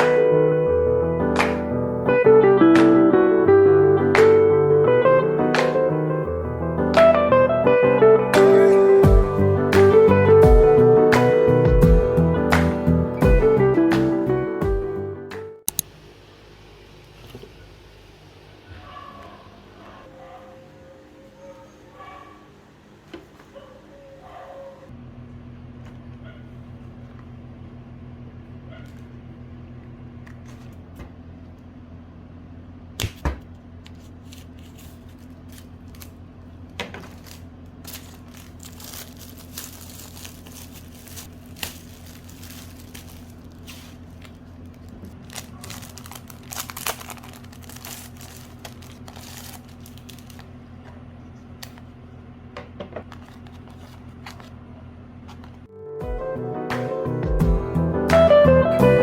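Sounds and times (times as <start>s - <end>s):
objects being handled: 33.9s - 36.2s, 36.8s - 51.0s.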